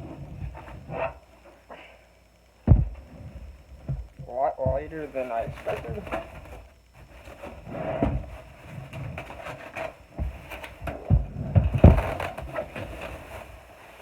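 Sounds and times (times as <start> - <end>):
cardboard and foam rustling: 0.0 - 1.7, 2.6 - 14.0
case thumping against packaging: 2.7 - 13.2.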